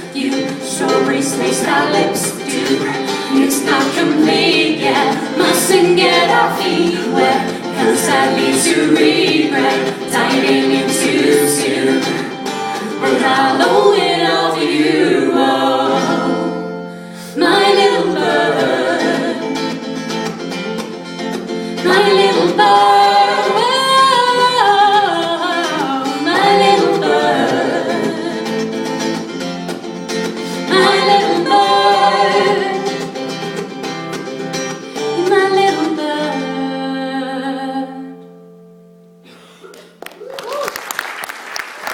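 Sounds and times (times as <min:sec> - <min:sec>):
person singing: 0:00.0 - 0:19.6, 0:21.8 - 0:28.7, 0:30.4 - 0:33.1
guitar chords: 0:00.0 - 0:40.0.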